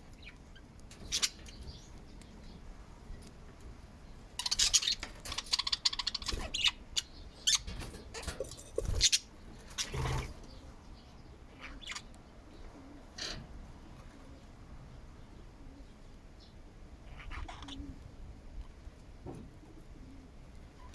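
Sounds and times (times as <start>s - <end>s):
budgies chattering: 0.1s - 2.6s, 4.3s - 14.2s, 17.1s - 17.9s.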